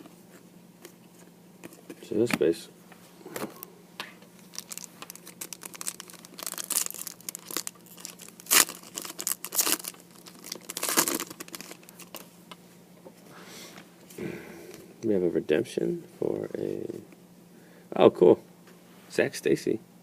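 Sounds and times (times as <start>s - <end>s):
trading cards rustling: 4.4s - 12.3s.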